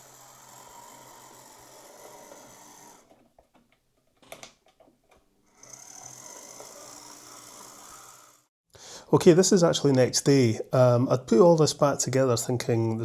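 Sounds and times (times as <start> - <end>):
model train motor whirring: 0.0 - 3.2, 5.5 - 8.5.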